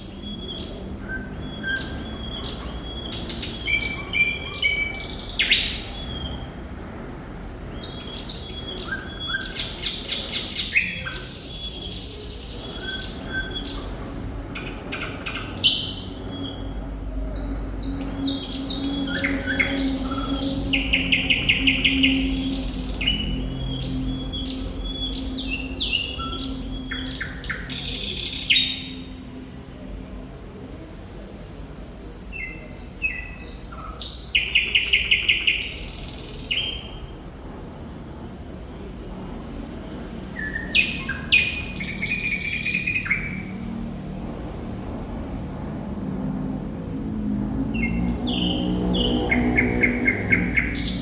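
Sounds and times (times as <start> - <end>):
bird singing varied phrases: 47.4 - 51.0.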